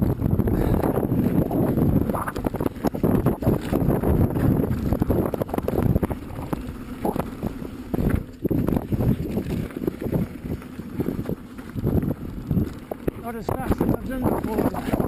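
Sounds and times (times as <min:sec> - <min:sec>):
bike rattling and knocking: 0:00.0 - 0:15.0
tyres rumbling on dirt: 0:00.0 - 0:15.0
wind buffeting microphone: 0:00.0 - 0:15.0.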